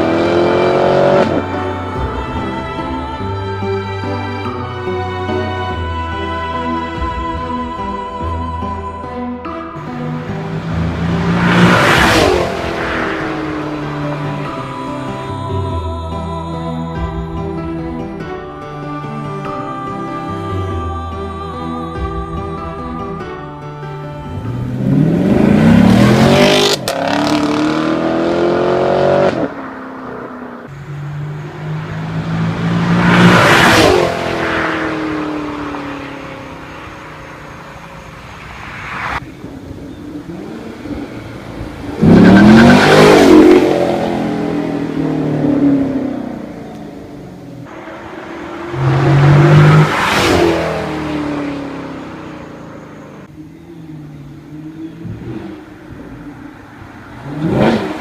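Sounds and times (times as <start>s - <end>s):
car accelerating past: 9.9s - 14.8s, 24.4s - 53.3s.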